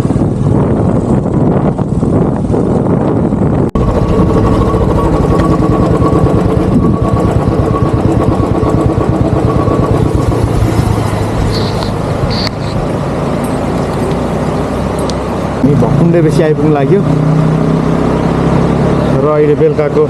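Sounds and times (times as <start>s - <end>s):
motorcycle engine thumping: 3.7s - 14.2s.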